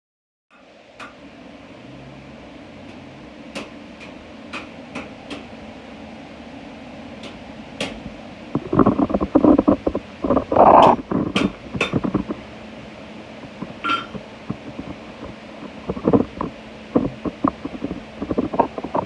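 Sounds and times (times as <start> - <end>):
fan-like rush: 0.6 - 19.0
rapid rattling knocks: 7.2 - 12.4.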